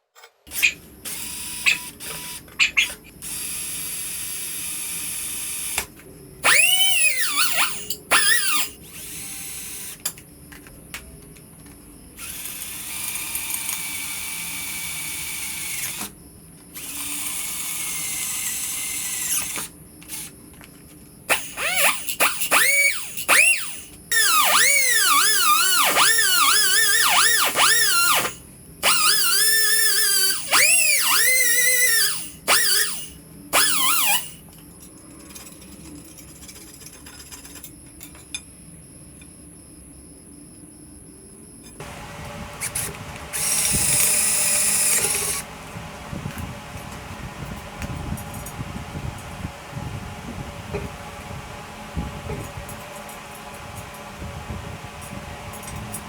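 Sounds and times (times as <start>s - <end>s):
electric power tool whine: 3.2s - 10.2s, 12.2s - 16.2s, 21.3s - 34.4s, 41.8s - 56.0s.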